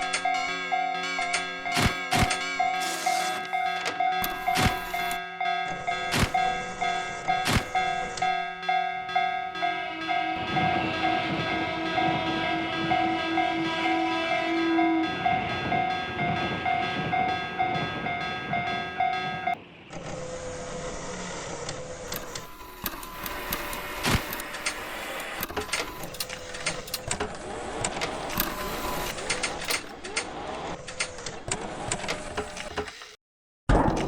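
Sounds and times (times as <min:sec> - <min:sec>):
horn-like tone: 0:00.0 - 0:19.6
mechanical clattering: 0:01.2 - 0:08.6, 0:33.7 - 0:34.0.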